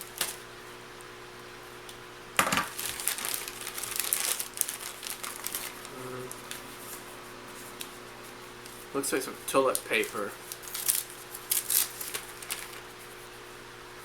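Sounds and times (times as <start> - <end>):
knife cutting plastic wrapper: 0.0 - 0.4, 2.4 - 6.6, 9.6 - 12.9
plastic wrapper crinkling: 0.0 - 0.4, 2.4 - 8.0, 8.6 - 13.2.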